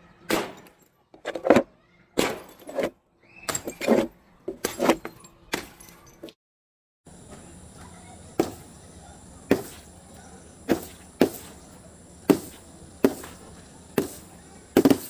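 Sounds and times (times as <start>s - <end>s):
sharp cracking impacts: 2.2s - 2.7s
steady background hiss: 7.1s - 15.0s.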